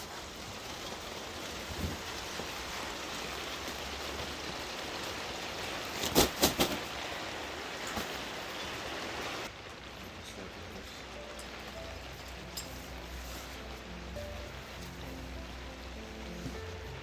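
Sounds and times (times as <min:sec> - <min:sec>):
rain falling: 0:00.0 - 0:17.0.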